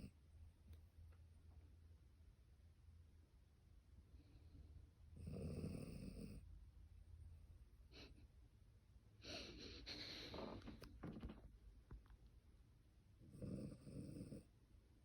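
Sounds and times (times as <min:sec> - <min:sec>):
dog snoring: 0:05.2 - 0:06.4, 0:13.2 - 0:14.5.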